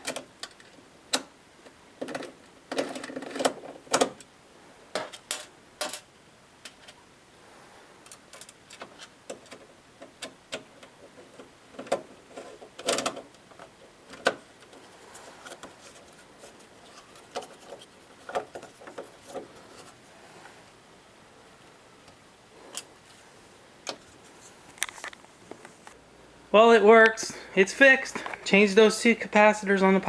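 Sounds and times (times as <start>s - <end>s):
hard objects clicking and knocking: 2.0s - 4.3s.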